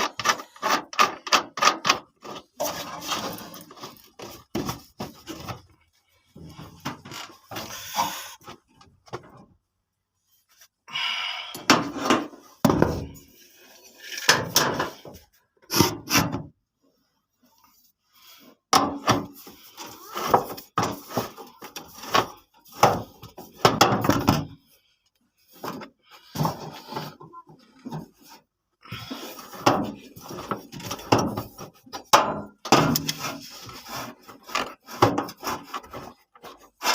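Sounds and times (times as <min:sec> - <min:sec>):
tools clattering and knocking: 0:14.1 - 0:15.2, 0:29.0 - 0:36.9.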